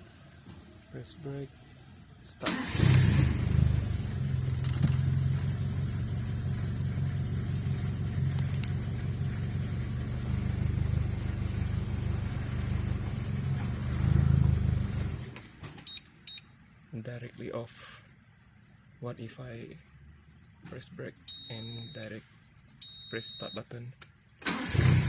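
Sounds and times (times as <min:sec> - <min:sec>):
car engine idling: 0:00.0 - 0:15.5.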